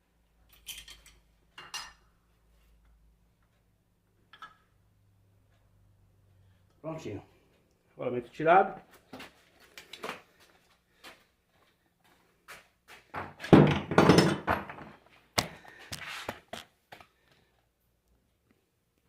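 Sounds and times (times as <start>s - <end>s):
parts and tools knocking on bench: 13.2s - 14.9s.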